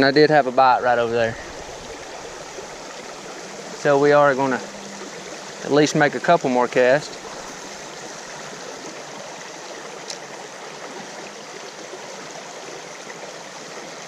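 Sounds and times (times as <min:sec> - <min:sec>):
creek water running over rocks: 0:00.0 - 0:14.0.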